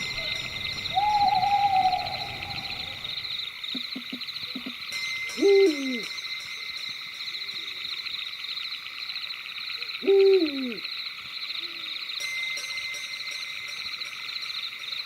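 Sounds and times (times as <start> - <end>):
owl hooting: 0.0 - 3.2, 5.4 - 6.1, 10.0 - 10.8.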